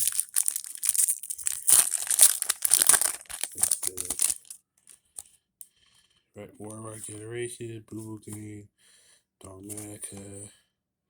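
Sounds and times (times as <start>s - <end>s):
foil wrapper crinkling: 0.0s - 5.2s.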